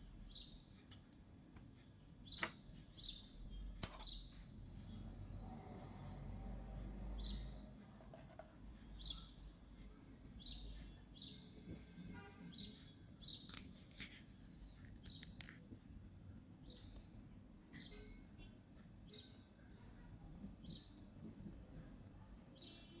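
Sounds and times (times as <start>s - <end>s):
small bird chirping: 0.2s - 0.8s, 2.2s - 5.1s, 7.1s - 7.8s, 8.8s - 11.6s, 12.2s - 15.6s, 16.6s - 17.0s, 17.7s - 19.9s.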